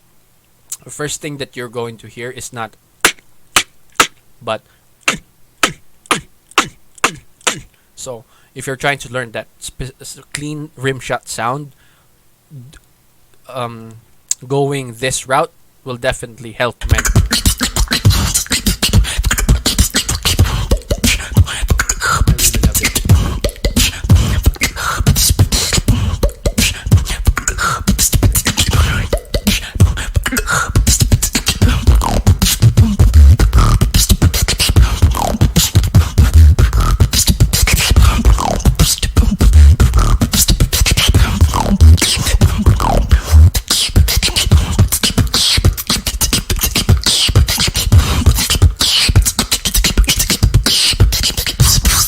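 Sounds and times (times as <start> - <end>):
woman beatboxing: 3.0 - 4.2, 5.0 - 7.7, 16.8 - 52.0.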